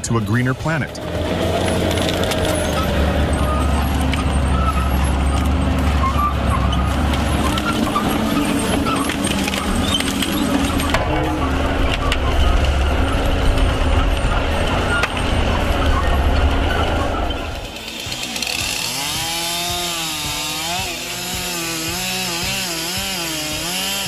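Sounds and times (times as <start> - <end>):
diesel engine drone: 0.0 - 24.0
machinery squeaks: 1.2 - 19.2
machinery clicks: 6.8 - 19.4.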